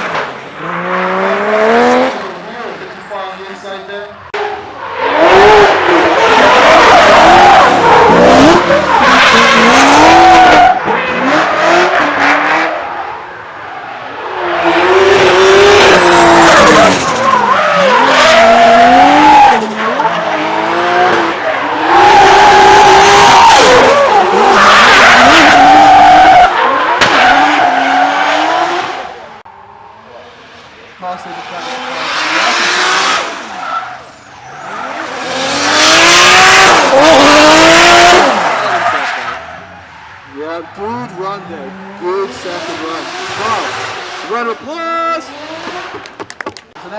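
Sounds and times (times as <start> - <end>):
car engine revving hard: 0.0 - 2.6, 5.1 - 12.8, 14.3 - 29.2, 31.5 - 33.6, 34.5 - 39.8, 41.0 - 44.6, 45.2 - 46.0
tyre squeal: 33.3 - 35.7.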